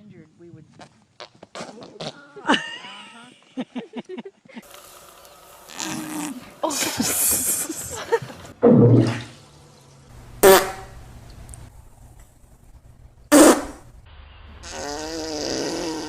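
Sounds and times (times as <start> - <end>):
animal farts: 5.7 - 6.4, 10.4 - 10.9, 13.3 - 13.8, 14.6 - 16.0.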